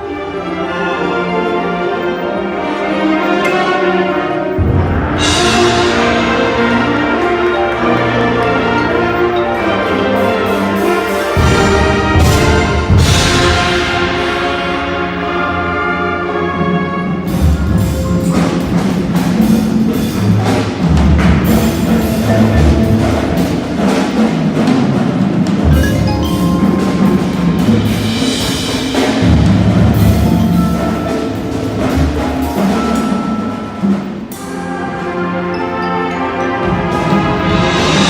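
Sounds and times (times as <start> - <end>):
marching band playing: 0.0 - 38.0
mallet percussion: 0.1 - 38.0
wood block: 17.2 - 24.9, 25.6 - 34.6.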